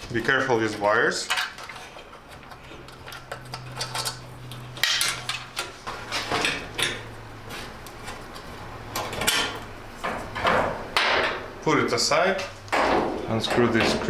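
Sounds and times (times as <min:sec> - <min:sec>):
sheet metal clinking and knocking: 0:09.0 - 0:11.6, 0:12.7 - 0:14.0.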